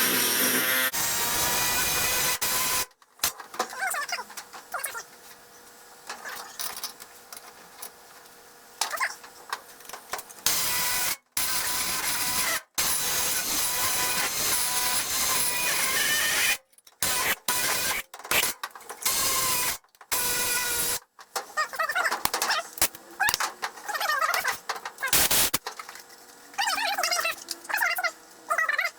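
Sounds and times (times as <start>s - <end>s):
power saw cutting sheet metal: 0.0s - 2.9s, 10.5s - 21.0s.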